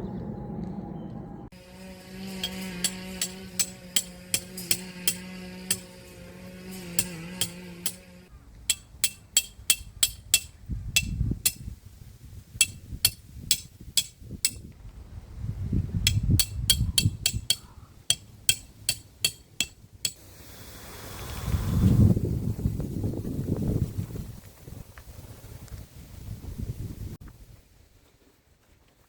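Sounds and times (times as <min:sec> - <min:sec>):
hammer striking metal peg: 0:02.4 - 0:06.2, 0:06.8 - 0:08.1, 0:08.7 - 0:11.7, 0:12.6 - 0:14.6, 0:16.0 - 0:20.2
wind rumble on microphone: 0:10.4 - 0:18.0, 0:20.8 - 0:27.7.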